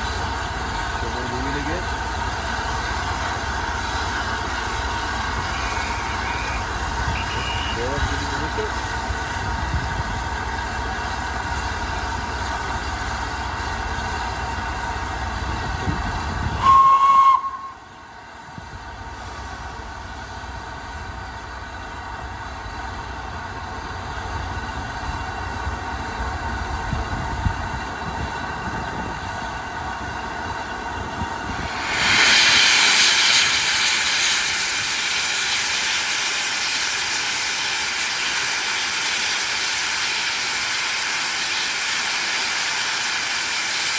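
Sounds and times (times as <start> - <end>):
steam hissing: 0.0 - 43.9
steam locomotive whistle: 5.4 - 8.2, 16.5 - 17.9.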